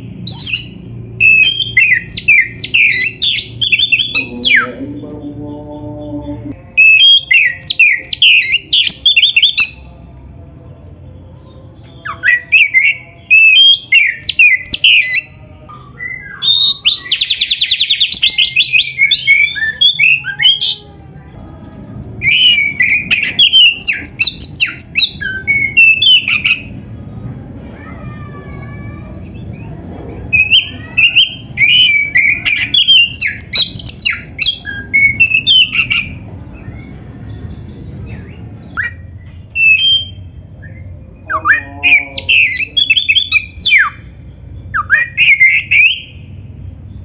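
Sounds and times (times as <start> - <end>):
songbird singing whistles: 0.1 - 4.7, 6.8 - 9.9, 10.5 - 21.1, 22.1 - 26.7, 29.4 - 46.7
lower pitched bird call: 27.8 - 47.0.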